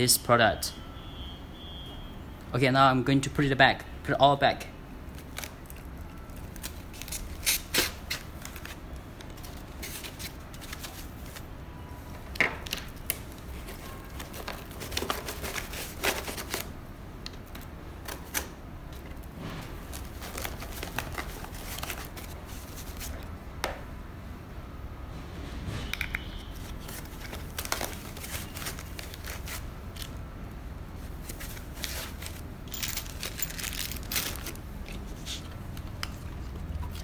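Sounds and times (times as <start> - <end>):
packaging rustling: 5.1 - 11.5, 12.1 - 23.3, 26.5 - 30.2, 31.0 - 37.0.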